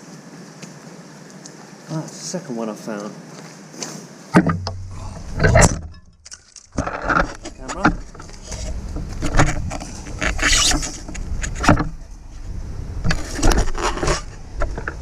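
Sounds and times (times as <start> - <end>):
metal object knocking and scraping: 4.4 - 11.9
low rumble: 4.6 - 6.2.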